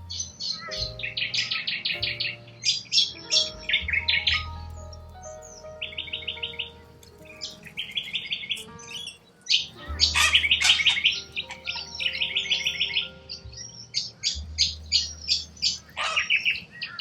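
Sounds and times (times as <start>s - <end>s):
cockatoos chattering: 5.5s - 17.0s
cockatoos screeching: 7.4s - 13.2s, 14.9s - 17.0s.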